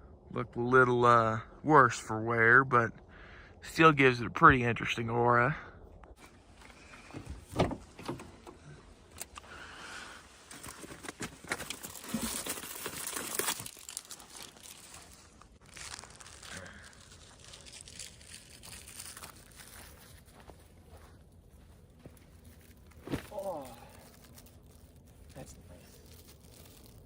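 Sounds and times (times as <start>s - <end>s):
crinkling and rustling: 10.2s - 27.0s.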